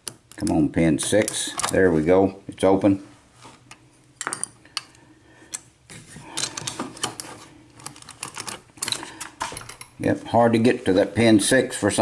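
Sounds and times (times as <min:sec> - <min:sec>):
padlock and tools clicking: 0:07.8 - 0:09.9.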